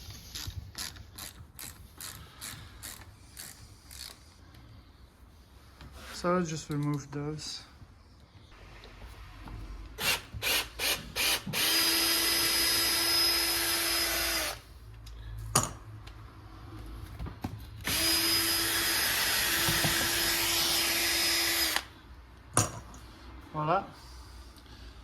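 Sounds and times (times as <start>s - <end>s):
cordless drill whining: 10.0s - 14.6s, 17.8s - 21.9s.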